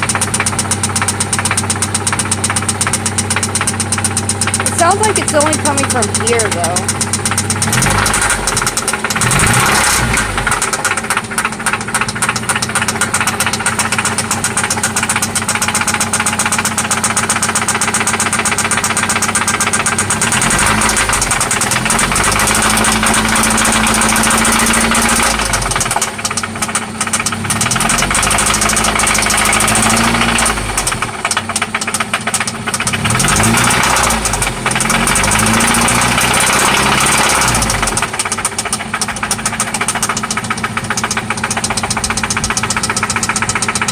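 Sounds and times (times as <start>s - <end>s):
car engine revving and knocking: 0.0s - 43.9s.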